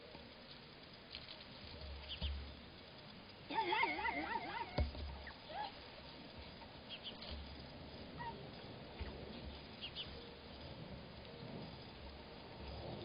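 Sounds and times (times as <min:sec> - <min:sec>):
animal wavering call: 0:03.5 - 0:05.8.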